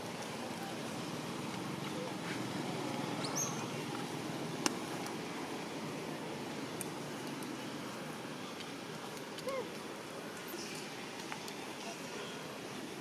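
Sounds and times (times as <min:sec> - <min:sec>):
faint voices: 0:08.3 - 0:13.0.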